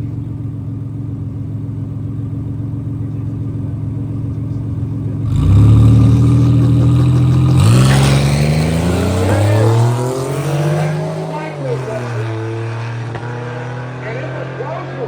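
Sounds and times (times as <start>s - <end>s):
race car engines idling: 0.0s - 15.0s
race car revving and accelerating: 4.5s - 15.0s.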